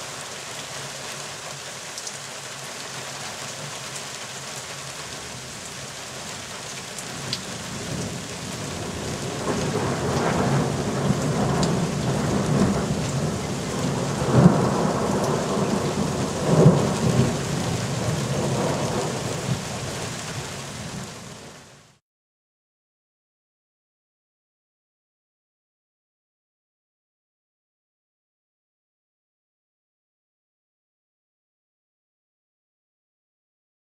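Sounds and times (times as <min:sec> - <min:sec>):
steady rain: 0:00.0 - 0:22.0
thunder rolling: 0:07.7 - 0:19.8.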